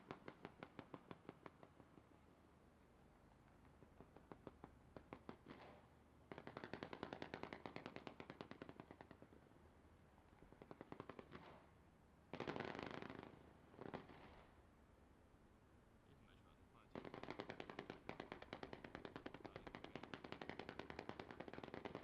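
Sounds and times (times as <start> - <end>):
fireworks popping and crackling: 10.5 - 11.6, 12.3 - 14.5, 16.9 - 22.0.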